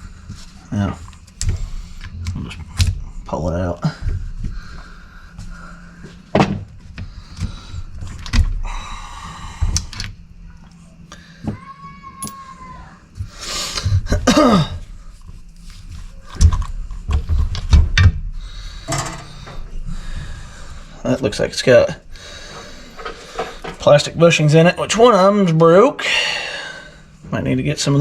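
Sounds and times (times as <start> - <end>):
metal parts and tools clinking: 18.9 - 19.7.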